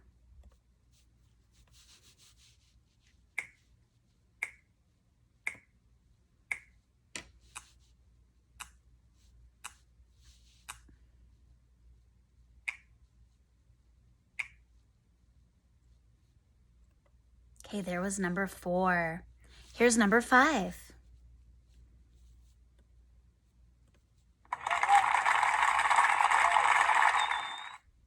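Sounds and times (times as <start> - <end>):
finger snaps: 3.4 - 3.6, 4.4 - 4.7, 5.5 - 5.7, 6.5 - 7.8, 8.6 - 8.8, 10.6 - 10.9, 12.7 - 12.9, 14.4 - 14.6.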